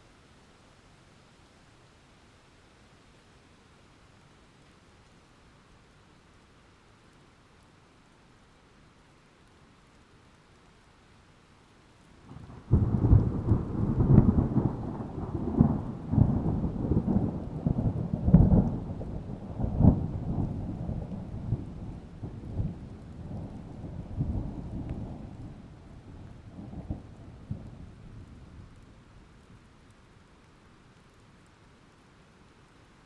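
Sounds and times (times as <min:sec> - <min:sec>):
thunder clap and rumble: 0:12.3 - 0:28.8.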